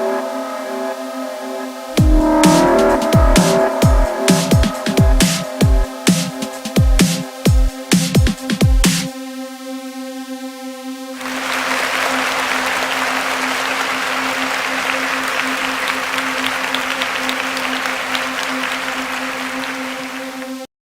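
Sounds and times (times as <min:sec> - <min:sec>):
steady droning note: 0:00.0 - 0:14.1
crowd applause: 0:02.0 - 0:07.2, 0:11.2 - 0:20.7.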